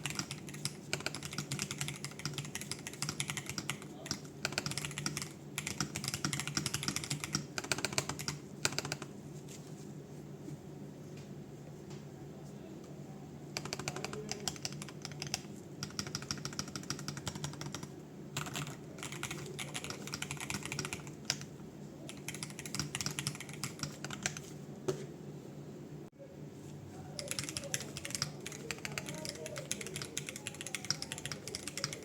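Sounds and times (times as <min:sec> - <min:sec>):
fast keyboard typing: 0:00.0 - 0:09.1, 0:13.5 - 0:24.5, 0:27.2 - 0:32.0.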